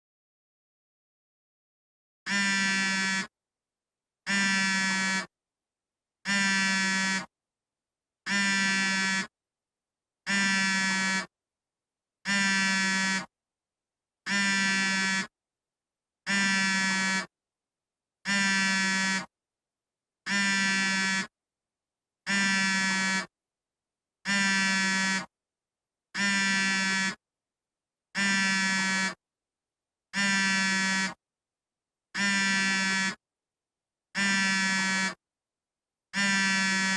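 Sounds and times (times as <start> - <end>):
phone vibrating: 2.3 - 3.3, 4.3 - 5.3, 6.3 - 7.3, 8.3 - 9.2, 10.3 - 11.3, 12.3 - 13.3, 14.3 - 15.2, 16.3 - 17.3, 18.3 - 19.2, 20.3 - 21.2, 22.3 - 23.3, 24.3 - 25.2, 26.2 - 27.1, 28.2 - 29.2, 30.2 - 31.2, 32.2 - 33.2, 34.2 - 35.2, 36.2 - 36.9.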